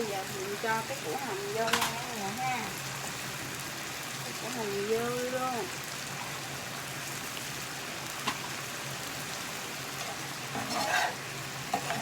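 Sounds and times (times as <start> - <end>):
food sizzling in a pan: 0.0 - 12.0
utensil scraping a pan: 10.0 - 12.0.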